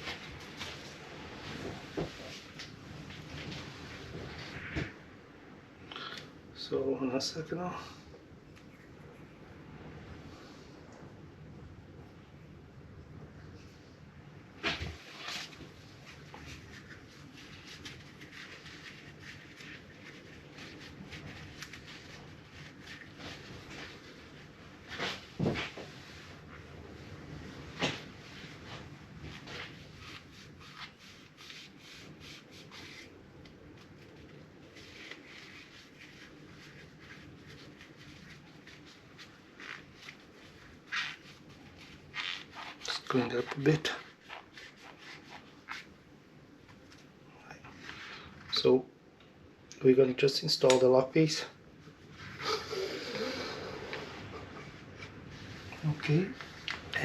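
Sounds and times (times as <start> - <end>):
cloth rubbing on metal: 14.6 - 46.1.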